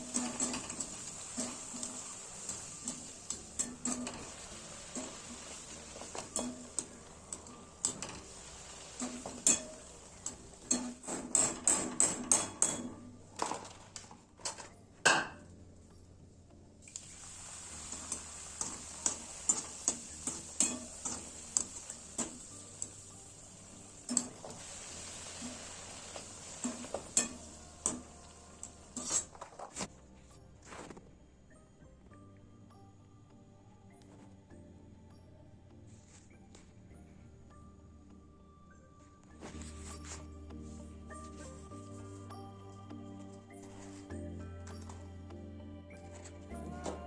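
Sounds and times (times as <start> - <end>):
frying hiss: 0.0 - 12.6, 16.9 - 29.8
metal spatula scraping pan: 25.2 - 29.6.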